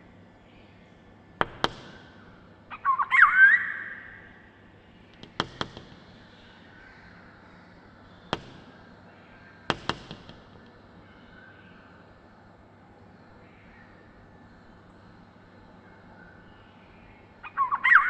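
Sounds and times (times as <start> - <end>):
bird fluty call: 1.8 - 4.5, 16.2 - 18.0.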